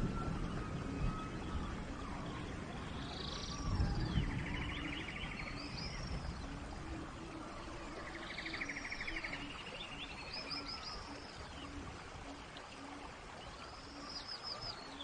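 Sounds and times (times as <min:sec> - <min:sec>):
birds calling: 0:00.0 - 0:15.0.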